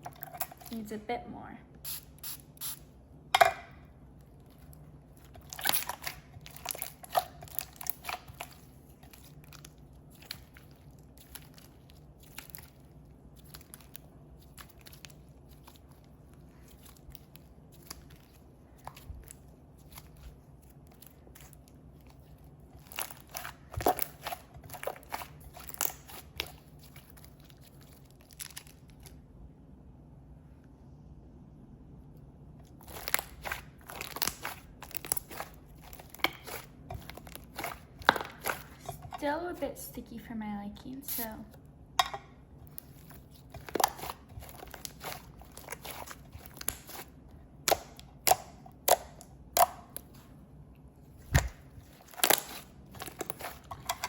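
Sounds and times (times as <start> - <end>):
slime crackling: 4.4 - 29.1, 32.7 - 39.3, 42.6 - 50.2, 51.3 - 54.0.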